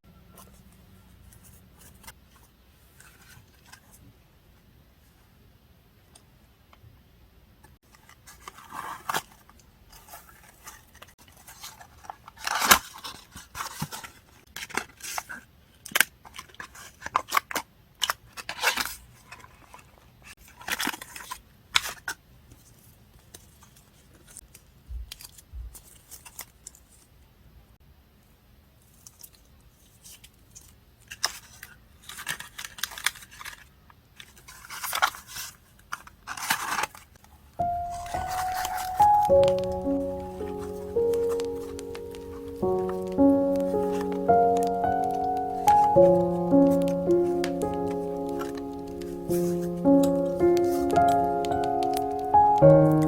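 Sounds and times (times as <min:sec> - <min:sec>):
small clicks of paper pieces: 0:07.9 - 0:27.1, 0:28.8 - 0:37.3, 0:38.0 - 0:53.0
paper rustling: 0:28.9 - 0:53.0
scissors snipping paper: 0:37.9 - 0:52.3.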